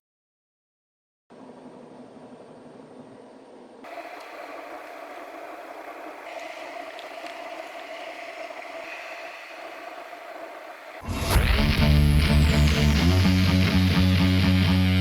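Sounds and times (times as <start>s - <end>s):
surf rushing: 3.9s - 13.3s.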